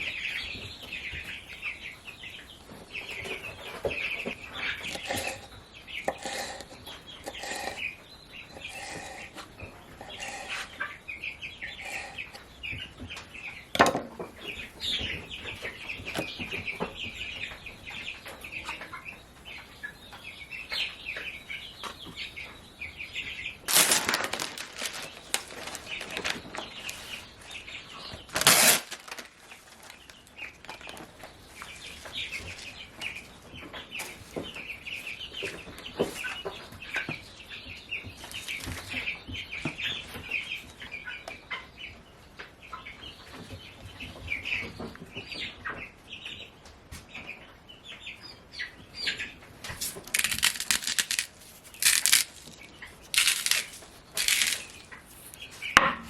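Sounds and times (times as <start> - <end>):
baby chicks peeping: 0.0 - 56.0
loud rustling: 23.7 - 27.2, 28.3 - 30.1, 49.8 - 55.4.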